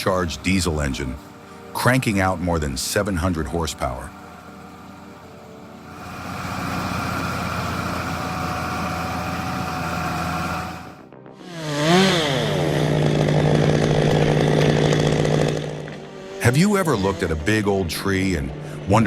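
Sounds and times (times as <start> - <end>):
motor drone: 0.0 - 19.0
chainsaw revving: 5.8 - 17.7.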